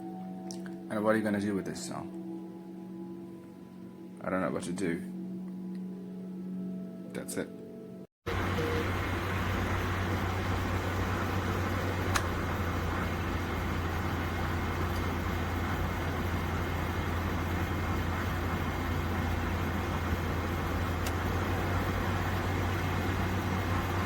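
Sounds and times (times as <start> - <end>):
low drone: 8.3 - 24.0
machine hum with hiss: 8.3 - 24.0
faint click: 12.1 - 12.4.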